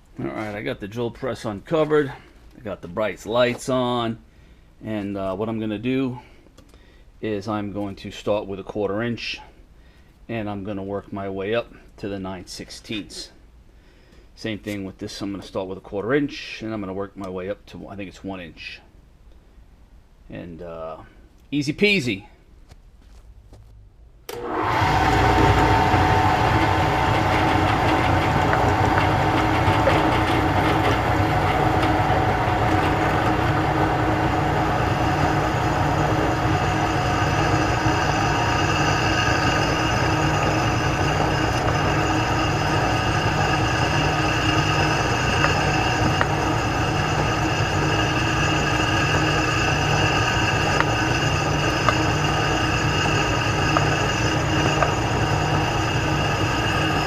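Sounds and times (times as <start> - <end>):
drill press drilling steel: 24.3 - 57.0.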